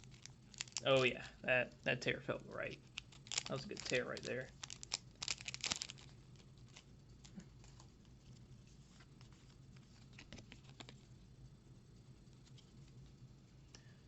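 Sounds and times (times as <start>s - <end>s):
wrapper crinkling: 0.0s - 1.3s, 2.6s - 7.9s
low steady hum: 0.0s - 14.0s.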